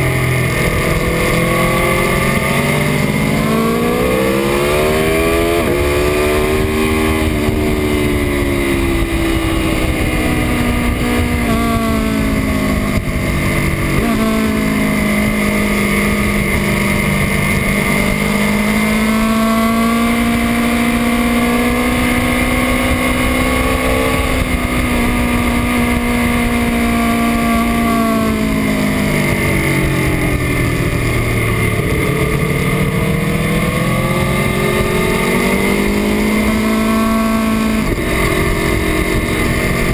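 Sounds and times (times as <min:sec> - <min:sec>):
motorcycle engine revving: 0:00.0 - 0:39.9
wind rush: 0:00.0 - 0:39.9.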